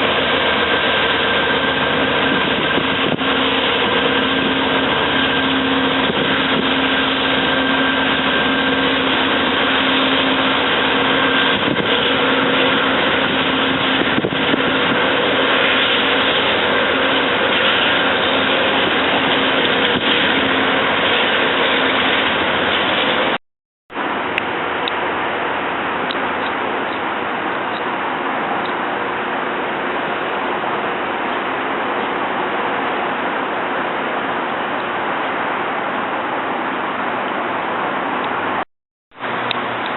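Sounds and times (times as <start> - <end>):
train running: 0.0 - 23.4, 39.2 - 39.9.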